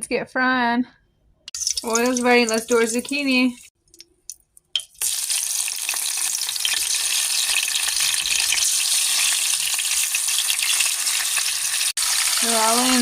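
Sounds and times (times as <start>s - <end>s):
vegetable slices sizzling in oil: 5.0s - 13.0s.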